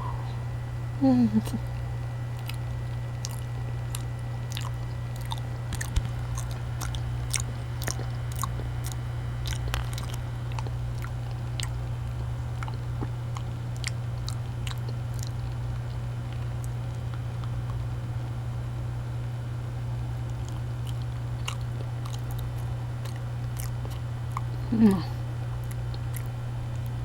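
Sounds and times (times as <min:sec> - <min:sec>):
steady low hum: 0:00.0 - 0:27.0
person chewing: 0:01.6 - 0:17.8, 0:20.2 - 0:27.0
wet mouth clicks and smacks: 0:01.7 - 0:17.8, 0:20.3 - 0:25.0, 0:25.6 - 0:27.0.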